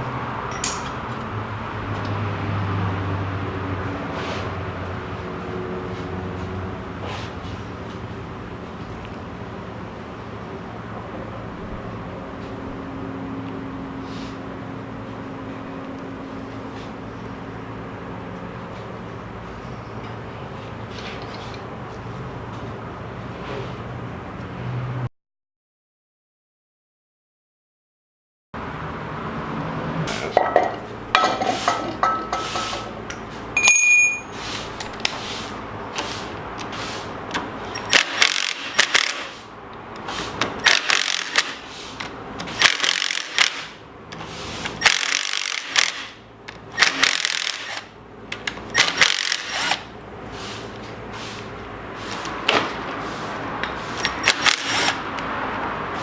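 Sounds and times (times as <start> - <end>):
hand tools clinking and knocking: 0.5 - 1.2, 30.2 - 34.4
short metallic ping: 33.6 - 34.4.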